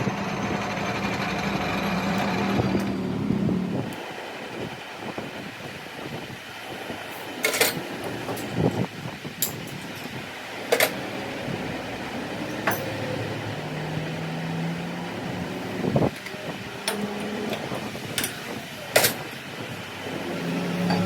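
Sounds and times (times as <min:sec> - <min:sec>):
fan hum: 0:00.0 - 0:21.0
tools clinking on metal: 0:12.5 - 0:13.0, 0:18.2 - 0:19.2.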